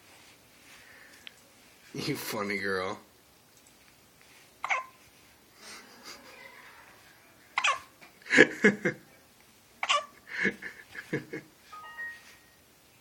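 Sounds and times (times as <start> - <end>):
baby hiccups: 4.6 - 5.0, 7.6 - 7.9, 9.8 - 10.2.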